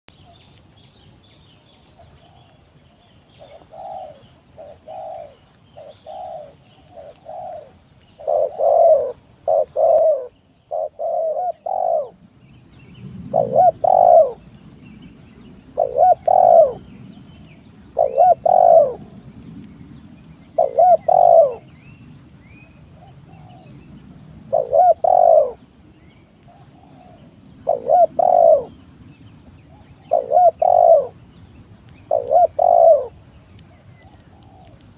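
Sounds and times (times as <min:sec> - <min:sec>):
dove cooing: 0:03.4 - 0:12.2, 0:13.3 - 0:14.5, 0:15.8 - 0:16.9, 0:17.9 - 0:19.2, 0:20.6 - 0:21.7, 0:24.5 - 0:25.6, 0:26.5 - 0:28.8, 0:29.7 - 0:31.2, 0:32.0 - 0:33.2, 0:33.9 - 0:34.9.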